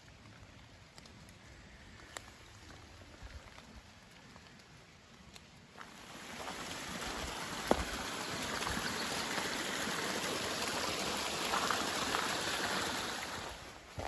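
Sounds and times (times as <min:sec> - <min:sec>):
stream water flowing: 0:05.7 - 0:14.0.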